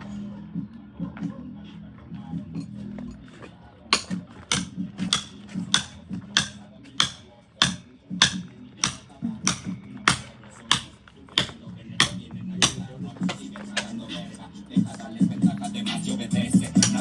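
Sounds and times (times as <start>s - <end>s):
music: 0.0s - 17.0s
hammer blows on masonry: 3.9s - 14.0s, 16.7s - 17.0s.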